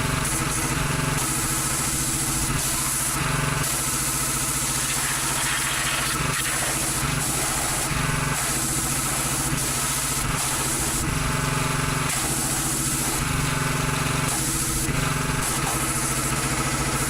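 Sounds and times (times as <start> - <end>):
pressure washer engine: 0.0 - 17.0
water spray hiss: 4.6 - 11.0.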